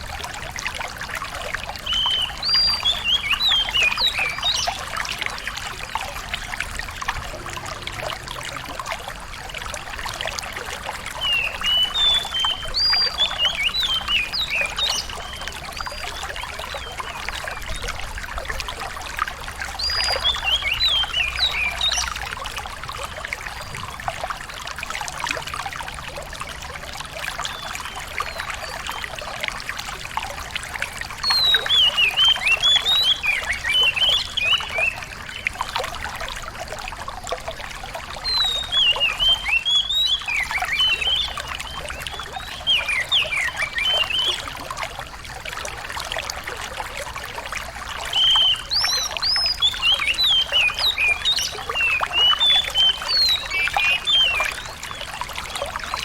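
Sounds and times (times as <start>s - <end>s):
running water trickling: 0.0s - 56.0s
songbird singing high notes: 48.1s - 55.1s.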